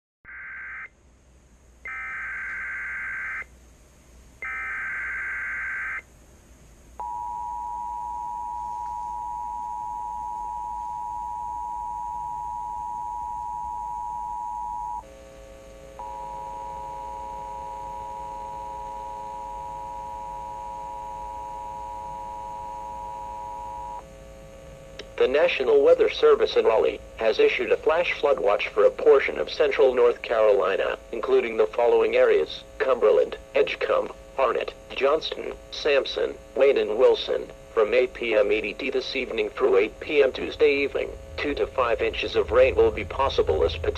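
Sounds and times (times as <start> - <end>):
digital data tone bursts: 1.9 - 3.5, 4.4 - 6.0
low buzzing tone: 4.4 - 6.2, 6.8 - 43.9
two-tone attention signal: 16.0 - 24.0.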